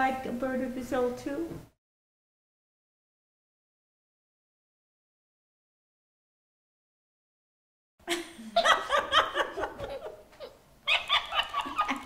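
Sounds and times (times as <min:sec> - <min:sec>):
high-pitched laughter: 0:08.1 - 0:12.0.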